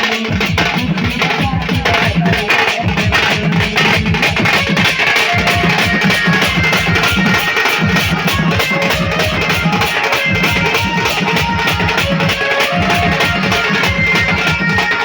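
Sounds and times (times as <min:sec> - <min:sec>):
fast driving drum beat: 0:00.0 - 0:15.0
held melody line: 0:00.0 - 0:15.0.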